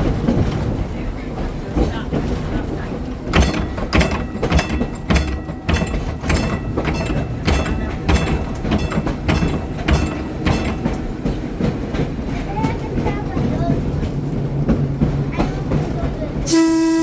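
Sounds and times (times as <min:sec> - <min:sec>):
trolley car rumble: 0:00.0 - 0:17.0
sharp clack of track: 0:03.3 - 0:13.2.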